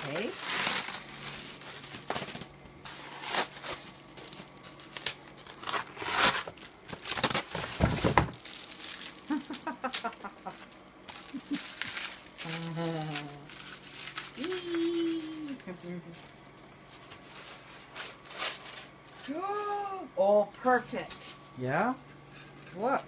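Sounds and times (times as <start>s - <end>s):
packing material crinkling: 0.0s - 19.8s
sharp tearing: 5.0s - 7.5s.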